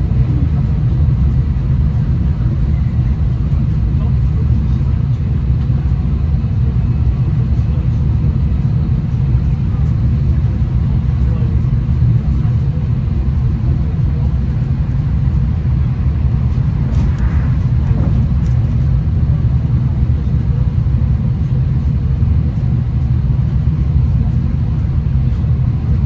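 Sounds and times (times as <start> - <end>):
train wheels rumbling on track: 10.6 - 21.5.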